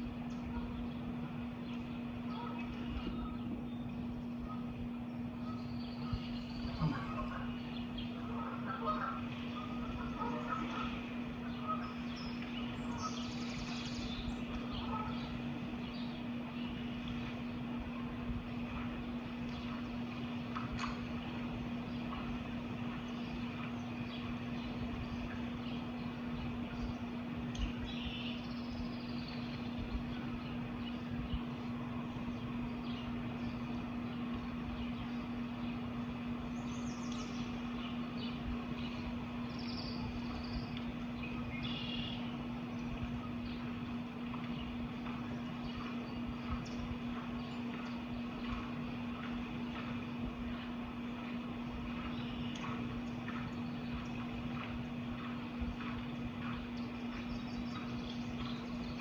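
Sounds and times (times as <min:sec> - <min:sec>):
low hum: 0:01.7 - 0:08.6, 0:22.1 - 0:59.0
birds chirping: 0:01.7 - 0:09.0, 0:23.0 - 0:59.0.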